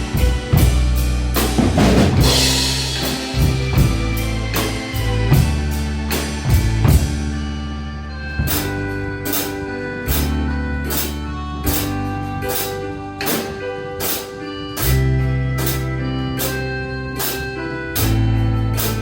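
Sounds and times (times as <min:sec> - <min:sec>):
bass and keyboard backing track: 0:00.0 - 0:19.0
drum kit playing: 0:00.0 - 0:19.0
sharp cymbal hits: 0:02.1 - 0:05.1.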